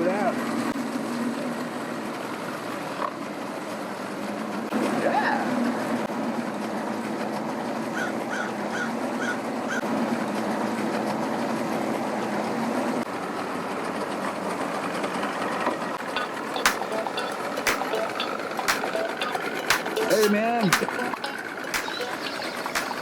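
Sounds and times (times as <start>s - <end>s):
chirping calls: 8.0s - 9.8s, 16.0s - 23.0s
engines running: 16.0s - 23.0s.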